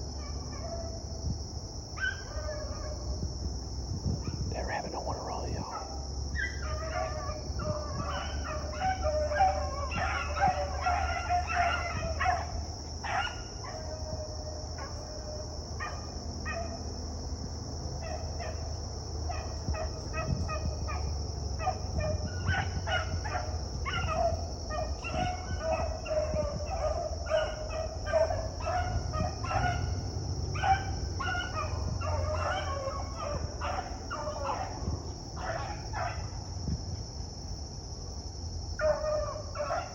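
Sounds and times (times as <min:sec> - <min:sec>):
steady high-pitched hiss: 0:00.0 - 0:06.7, 0:32.9 - 0:39.9
hounds baying: 0:02.0 - 0:03.1, 0:04.3 - 0:16.8, 0:19.3 - 0:36.4, 0:38.8 - 0:39.9.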